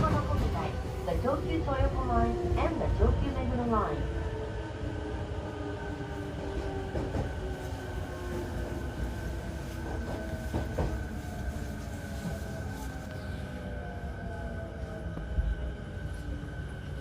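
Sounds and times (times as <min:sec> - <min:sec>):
low train rumble: 0:00.0 - 0:17.0.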